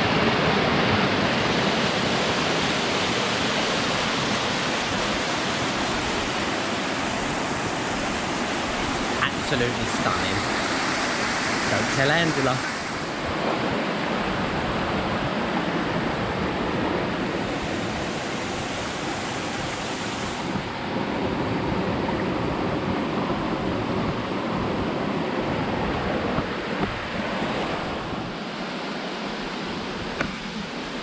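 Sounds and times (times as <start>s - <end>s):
waterfall rushing: 0.0s - 20.8s.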